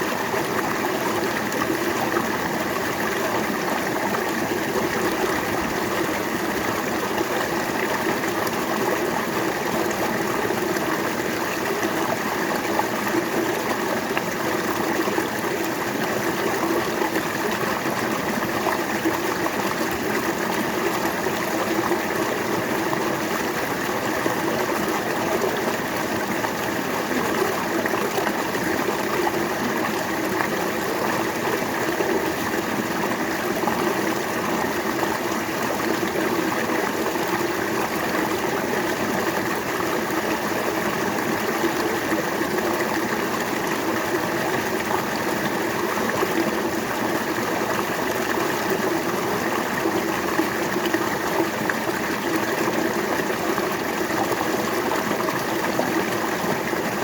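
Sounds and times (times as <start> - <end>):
river flowing over rocks: 0.0 - 57.0.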